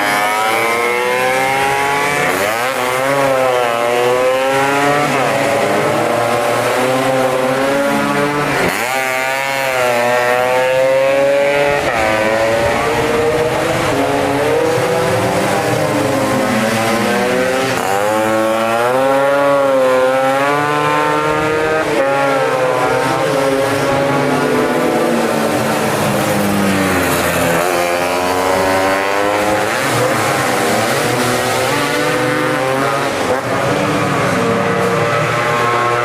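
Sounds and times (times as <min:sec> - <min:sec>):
scooter engines revving high: 0:00.0 - 0:36.0.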